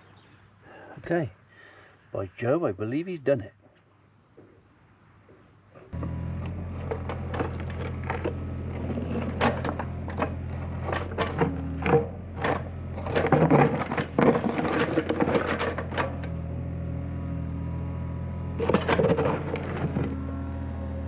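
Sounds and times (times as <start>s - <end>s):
clattering and scraping: 5.9s - 16.6s, 18.5s - 20.3s
engine running steadily: 5.9s - 21.0s.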